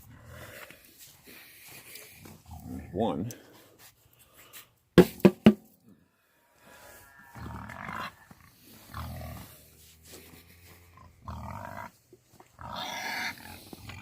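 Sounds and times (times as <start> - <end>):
animal grunting: 7.3 - 9.7, 10.6 - 11.9, 12.6 - 14.0.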